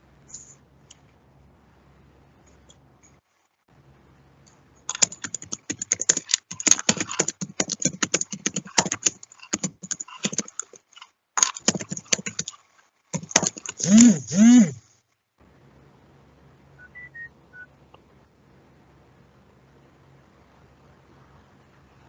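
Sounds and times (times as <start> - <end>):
typing on computer keyboard: 4.9 - 12.6, 13.2 - 14.8.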